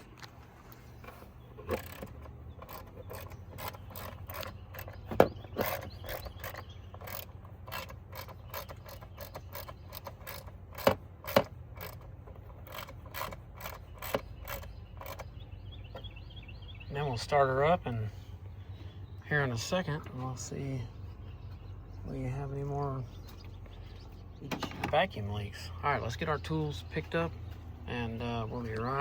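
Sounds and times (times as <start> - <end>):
socket ratchet clicking: 1.6 - 15.4.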